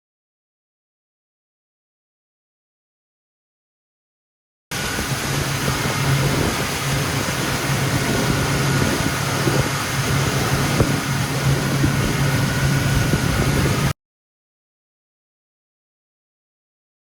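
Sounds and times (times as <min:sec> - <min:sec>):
loud rushing noise: 0:04.7 - 0:14.0
steady engine hum: 0:04.7 - 0:14.0.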